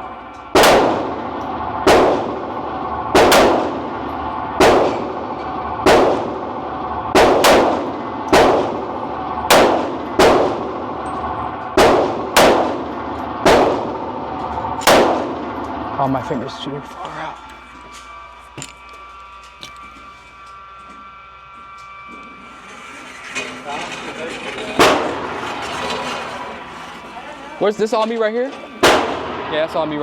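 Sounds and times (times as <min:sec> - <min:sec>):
handgun shots with ringing echo: 0:00.6 - 0:01.0, 0:07.2 - 0:07.8, 0:09.5 - 0:10.6, 0:11.8 - 0:12.8, 0:14.9 - 0:15.4, 0:28.8 - 0:29.4.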